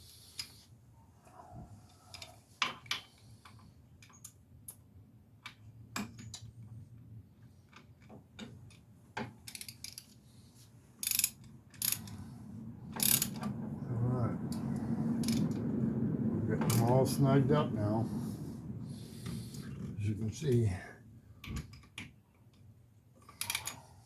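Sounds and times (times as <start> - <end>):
hand ratchet clicking: 11.0 - 12.1.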